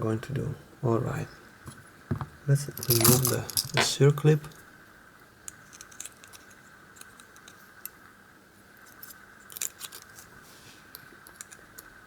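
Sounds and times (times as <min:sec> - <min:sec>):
metal tool clicking and scraping: 0:11.0 - 0:11.9.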